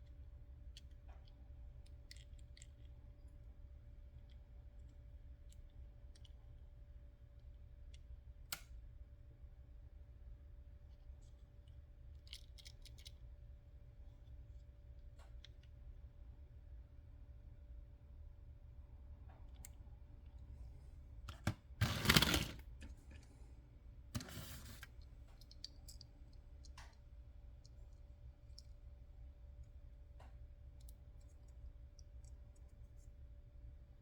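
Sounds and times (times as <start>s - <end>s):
louder handling noises: 21.3s - 23.2s.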